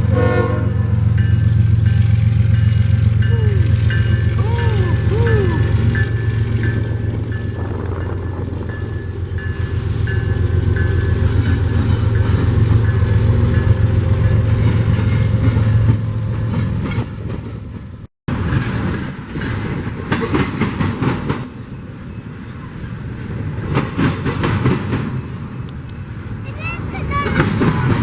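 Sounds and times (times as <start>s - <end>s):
locomotive engine rumble: 0.0s - 18.8s.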